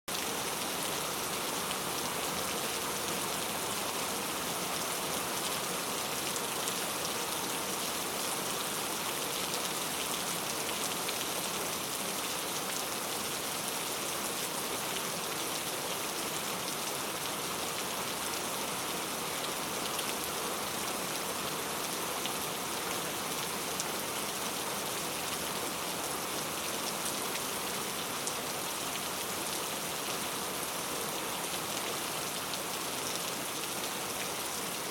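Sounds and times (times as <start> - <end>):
steady rain falling: 0.1 - 34.9.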